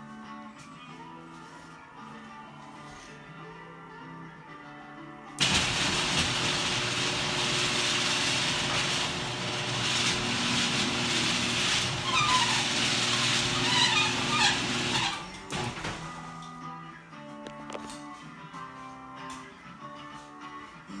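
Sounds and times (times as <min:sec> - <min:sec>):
door rollers squeaking: 0:05.4 - 0:16.4
garage door motor hum: 0:05.4 - 0:16.4.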